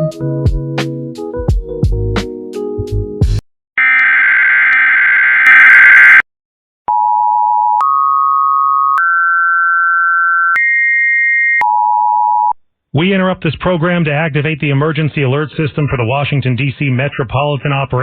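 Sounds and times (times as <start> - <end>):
harsh buzzing tone burst: 3.8 - 6.2.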